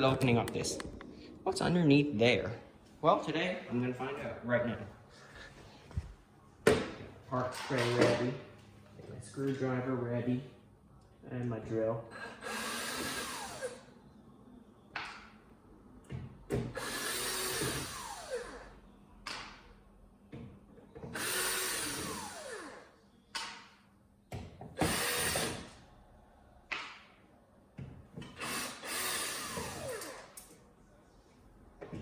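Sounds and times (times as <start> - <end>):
power drill backing out screws: 24.8 - 25.7, 28.2 - 30.4.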